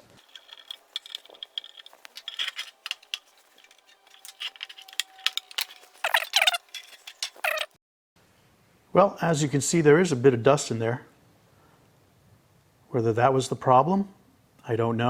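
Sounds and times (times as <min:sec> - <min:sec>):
metal case clicks and rattles: 0:00.0 - 0:07.7.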